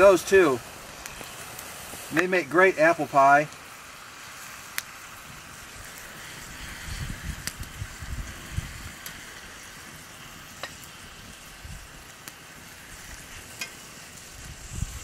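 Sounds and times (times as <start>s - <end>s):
meat sizzling in a skillet: 0.0s - 15.0s
sharp pops: 7.3s - 7.8s, 10.5s - 10.9s.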